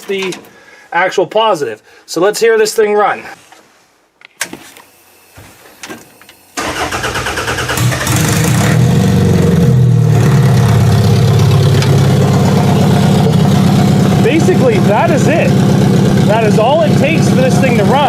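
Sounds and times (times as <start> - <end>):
car engine cranking and starting: 6.6 - 18.0
car engine idling: 6.6 - 18.0.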